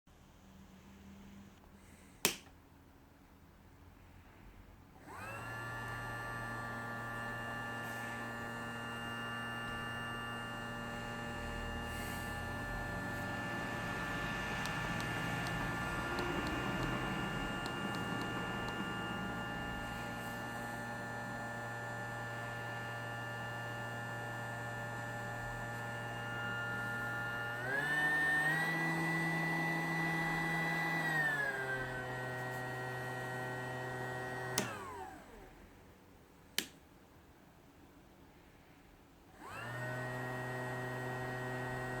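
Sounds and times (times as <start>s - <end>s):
hot-air gun fan whining: 1.8s - 2.6s, 5.0s - 35.8s, 36.5s - 36.9s, 39.3s - 42.0s
switch click: 2.2s - 2.6s, 34.6s - 34.8s, 36.6s - 36.8s.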